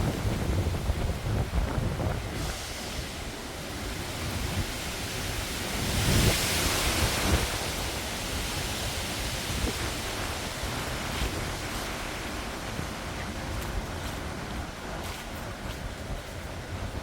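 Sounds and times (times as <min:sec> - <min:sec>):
storm wind rushing: 0:00.0 - 0:17.0
surf: 0:00.0 - 0:17.0
wind buffeting microphone: 0:00.0 - 0:17.0.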